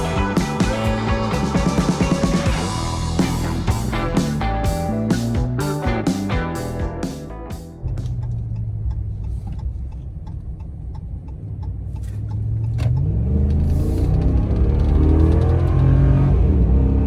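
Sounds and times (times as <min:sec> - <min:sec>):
utility vehicle engine revving: 0:07.8 - 0:17.0.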